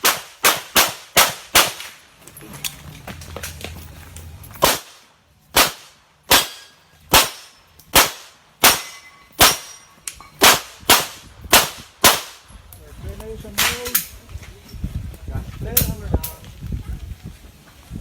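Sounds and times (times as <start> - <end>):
pistol shots: 0.0 - 2.0, 4.6 - 9.8, 10.4 - 12.4.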